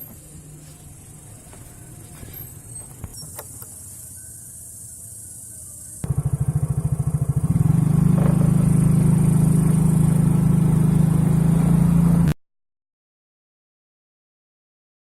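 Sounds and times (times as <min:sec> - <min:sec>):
low engine-like drone: 0:03.6 - 0:12.3.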